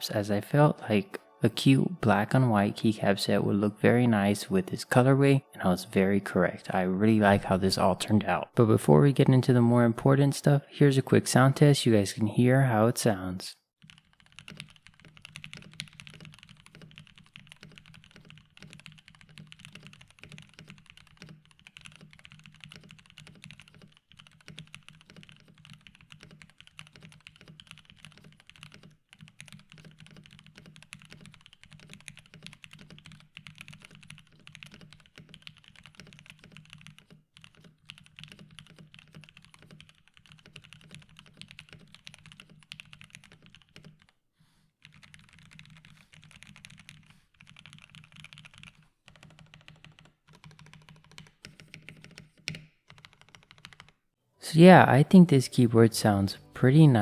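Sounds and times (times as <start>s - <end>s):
mechanical keyboard typing: 13.8s - 44.1s, 44.8s - 54.0s.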